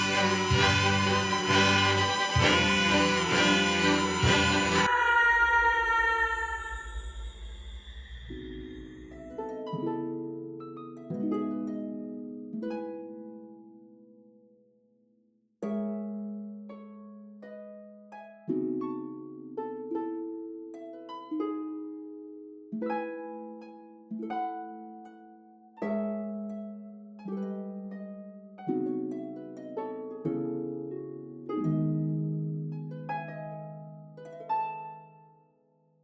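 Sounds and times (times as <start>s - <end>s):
plucked string music: 0.0s - 4.9s.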